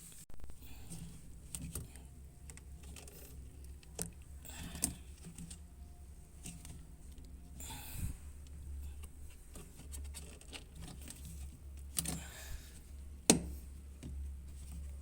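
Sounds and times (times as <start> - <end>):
low steady hum: 0.0 - 15.0
small plastic parts clicking and tapping: 0.8 - 5.7, 8.4 - 15.0.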